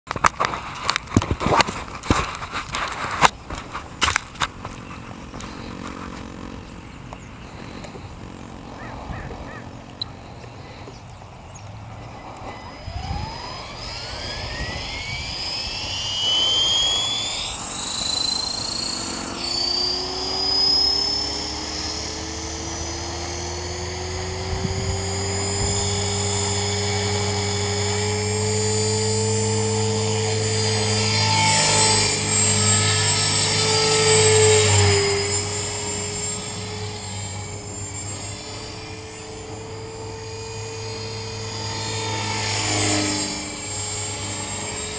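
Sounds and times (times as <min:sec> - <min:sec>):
rc helicopter motor whine: 0:00.1 - 0:44.9.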